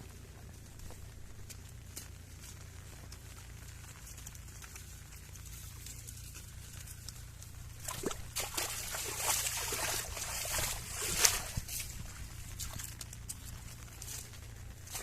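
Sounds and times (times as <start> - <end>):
water sloshing and splashing: 4.0 - 15.0.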